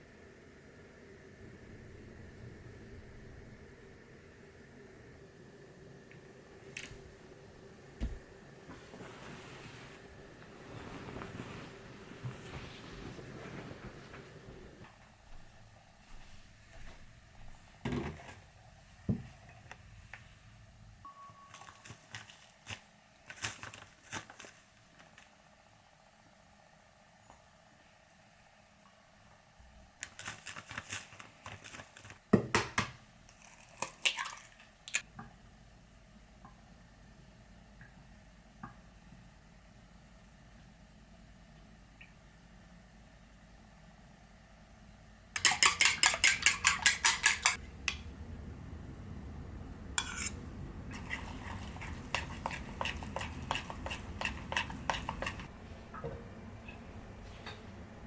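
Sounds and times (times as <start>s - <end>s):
crinkling handling noise: 21.5s - 25.4s, 30.0s - 32.3s
kitchen utensils clattering: 45.4s - 47.6s.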